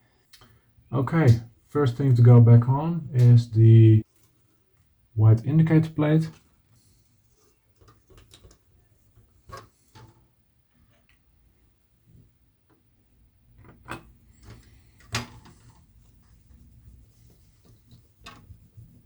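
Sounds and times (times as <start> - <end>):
faint low hum: 0.9 - 4.0, 5.2 - 6.3.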